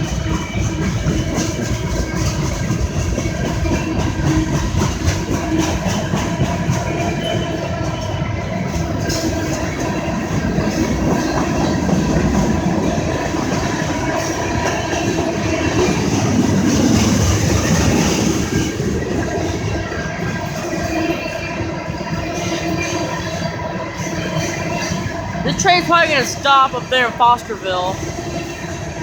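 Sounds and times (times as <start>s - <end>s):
freight train wheels rumbling: 0.0s - 29.0s.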